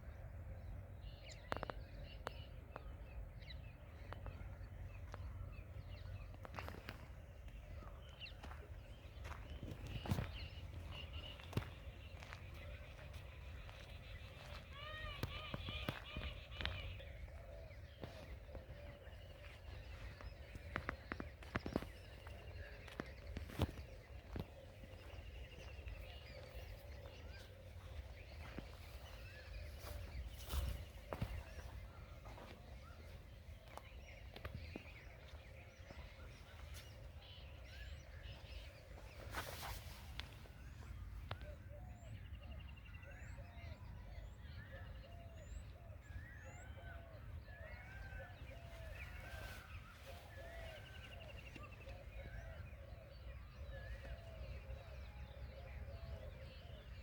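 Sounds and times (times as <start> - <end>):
small birds chirping: 0.8 - 57.0.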